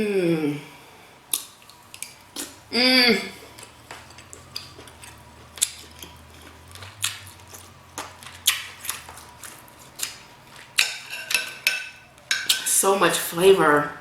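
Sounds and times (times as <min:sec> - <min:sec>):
chewing and lip smacking: 0:01.3 - 0:02.7, 0:03.4 - 0:11.1.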